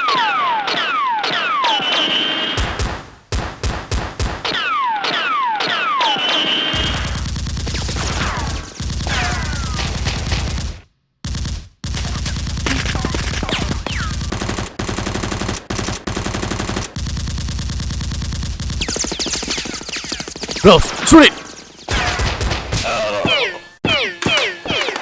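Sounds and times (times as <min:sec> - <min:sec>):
rapid automatic gunfire: 0:06.7 - 0:20.6, 0:24.2 - 0:25.0.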